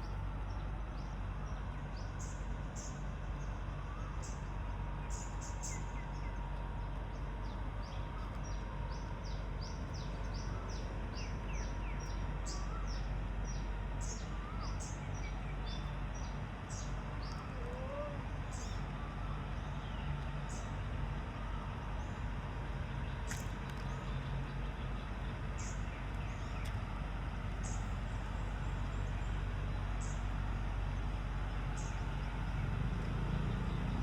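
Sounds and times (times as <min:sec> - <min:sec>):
low outdoor hum: 0:00.0 - 0:34.0
small birds chirping: 0:07.1 - 0:20.8, 0:23.0 - 0:34.0.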